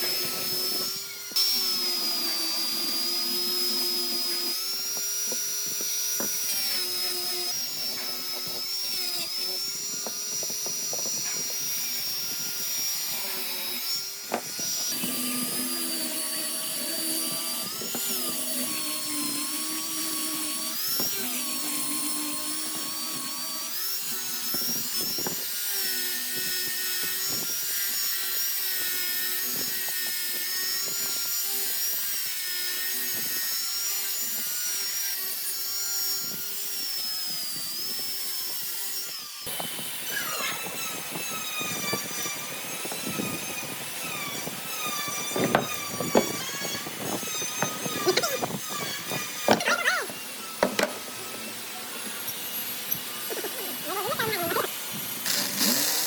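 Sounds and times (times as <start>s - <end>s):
power tool motor whine: 0.0s - 56.0s.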